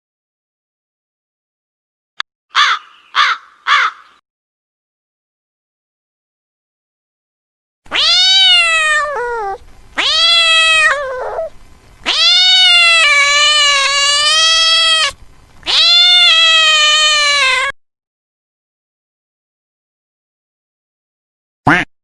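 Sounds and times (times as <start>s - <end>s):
cat meowing: 7.9s - 17.8s.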